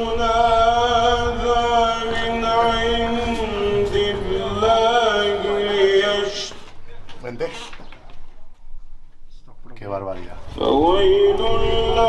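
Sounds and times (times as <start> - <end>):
low drone: 0.0 - 6.5, 10.3 - 12.0
person chanting held notes: 10.4 - 12.0.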